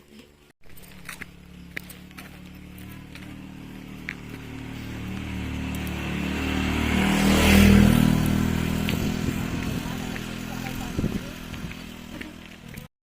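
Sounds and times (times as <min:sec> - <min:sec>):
motor vehicle passing by: 0:00.8 - 0:12.9.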